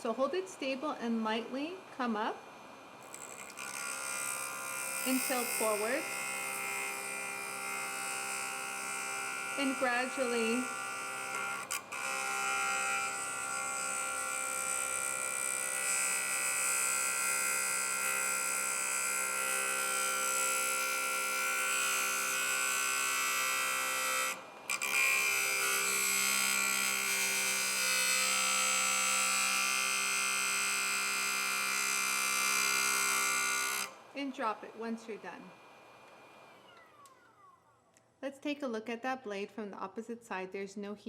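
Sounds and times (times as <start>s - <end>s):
knife grinding on abrasive disc: 3.0s - 15.4s
sharpener motor whine: 3.0s - 37.8s.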